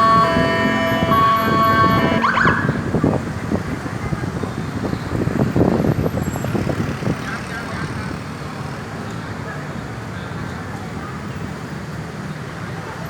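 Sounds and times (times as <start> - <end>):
ambulance two-tone siren: 0.0 - 3.2
traffic noise: 0.0 - 13.0.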